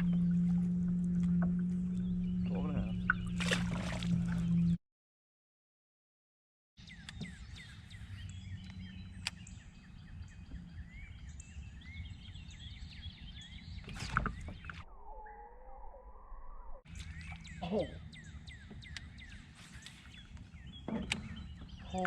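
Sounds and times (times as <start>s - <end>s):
steady low rumble: 0.0s - 4.8s
small birds chirping: 1.6s - 4.8s, 6.8s - 14.9s, 16.9s - 22.0s.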